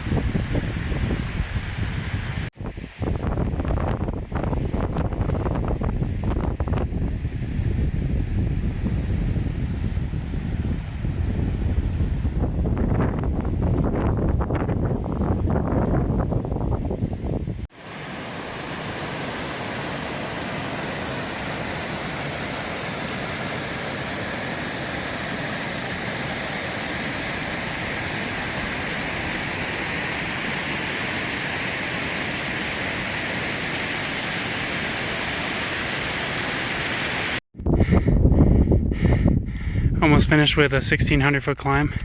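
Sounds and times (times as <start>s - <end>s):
wind buffeting microphone: 0.0s - 17.7s, 37.6s - 41.3s
running water hiss: 17.7s - 37.4s.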